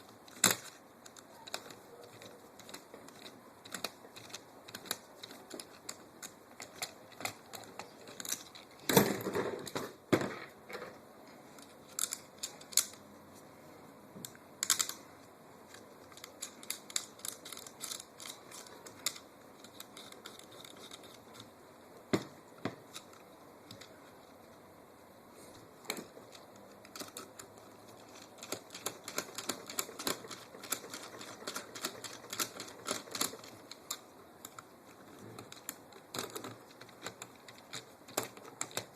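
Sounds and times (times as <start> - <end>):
metal parts clicking: 0.2 - 9.2, 11.6 - 13.0, 14.6 - 15.0, 15.7 - 21.6, 25.9 - 38.9.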